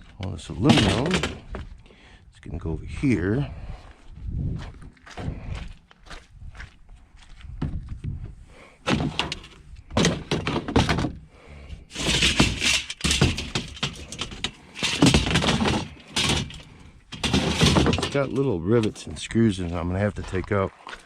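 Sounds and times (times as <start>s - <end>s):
scrap metal clattering onto pile: 0.6s - 1.4s, 11.9s - 18.4s.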